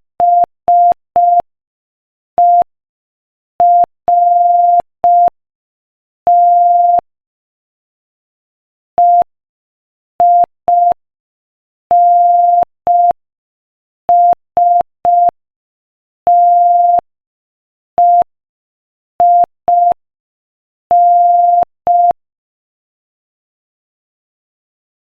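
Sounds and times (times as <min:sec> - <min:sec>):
morse code beeps: 0:06.3 - 0:07.0, 0:20.9 - 0:22.2.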